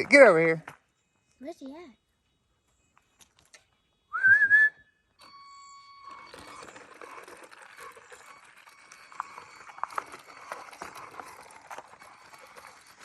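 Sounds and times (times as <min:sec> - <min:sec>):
faint steady whistled note: 0:00.8 - 0:13.0
person whistling loudly: 0:04.1 - 0:04.9.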